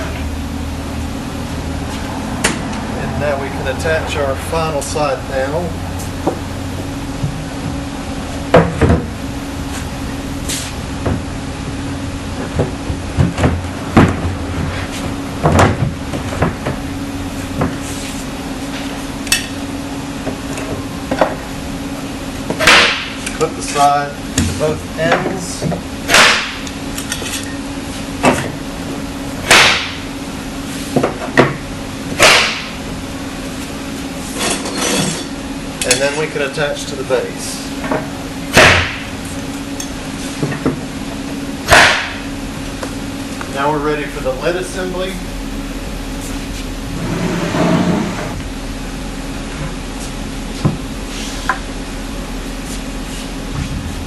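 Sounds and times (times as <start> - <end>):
steady low hum: 0.0 - 54.0
wooden knocks and bumps: 15.4 - 16.8.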